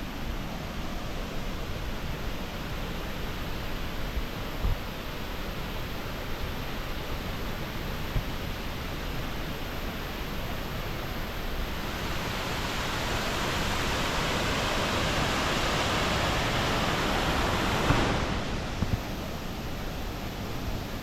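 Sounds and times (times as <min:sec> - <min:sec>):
waterfall rushing: 0:11.6 - 0:20.8.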